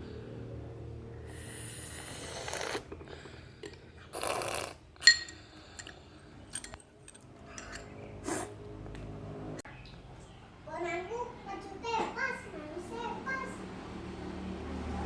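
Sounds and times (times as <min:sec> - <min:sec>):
noisy slurps: 0:01.3 - 0:04.8
spoon clinking against glass: 0:05.0 - 0:05.9.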